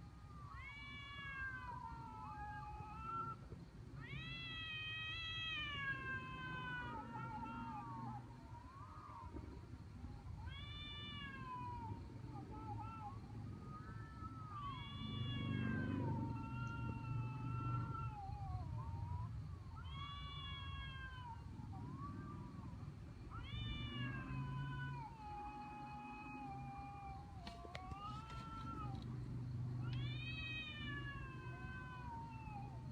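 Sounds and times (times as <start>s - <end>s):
low background hum: 0.0s - 32.9s
cat meowing: 0.5s - 3.4s, 4.0s - 9.3s, 10.4s - 22.6s, 23.3s - 29.1s, 29.8s - 32.8s.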